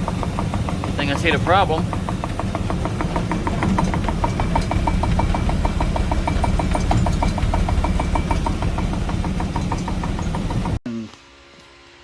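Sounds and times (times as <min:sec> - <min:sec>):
driveshaft clicking: 0:00.0 - 0:10.8
engine low rumble: 0:00.0 - 0:10.8.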